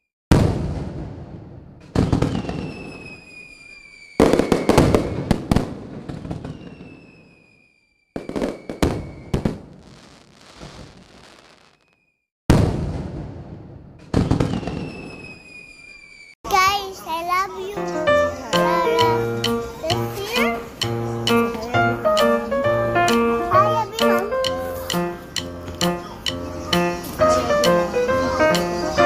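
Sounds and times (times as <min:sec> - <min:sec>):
fireworks bursting: 0:00.3 - 0:16.8
high descending whistle: 0:02.3 - 0:05.3, 0:06.4 - 0:09.4, 0:14.5 - 0:16.4.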